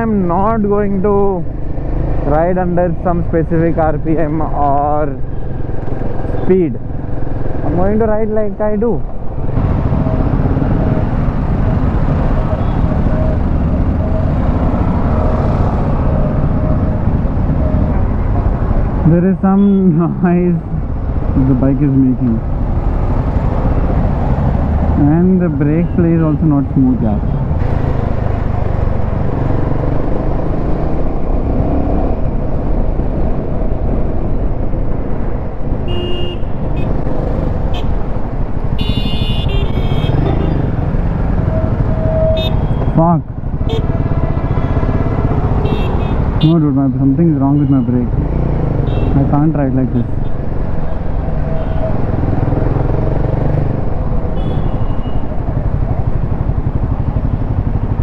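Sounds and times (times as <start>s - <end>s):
motorcycle riding noise: 0.0s - 58.0s
vehicle horn beeps: 35.9s - 36.9s, 38.8s - 40.7s, 42.0s - 43.0s, 43.7s - 43.9s, 45.6s - 46.6s, 54.4s - 55.3s
motorcycle engine running: 35.9s - 46.5s, 50.5s - 58.0s.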